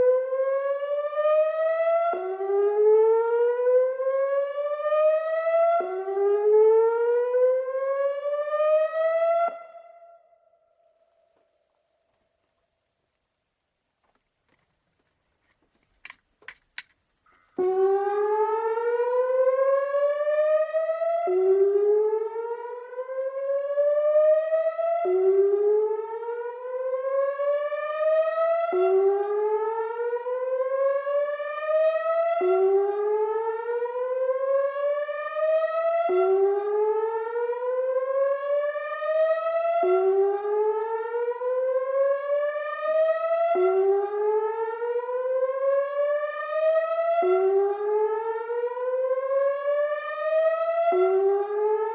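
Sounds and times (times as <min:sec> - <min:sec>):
siren whooping rising glide: 0:17.6 - 0:51.9.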